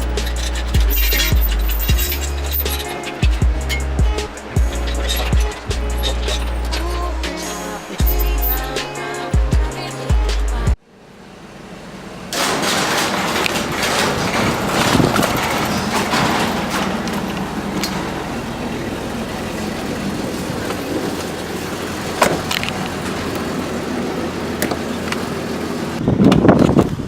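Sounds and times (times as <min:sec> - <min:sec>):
car road and engine noise: 0:00.0 - 0:27.0.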